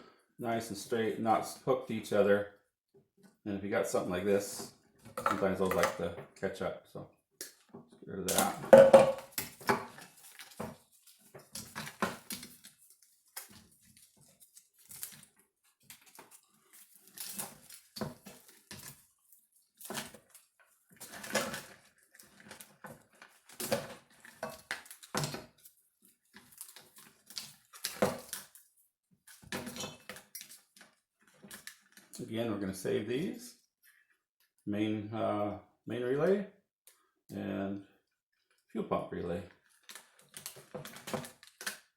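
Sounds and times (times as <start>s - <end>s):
wiring harness rustling and clattering: 9.4s - 32.2s, 39.6s - 41.9s.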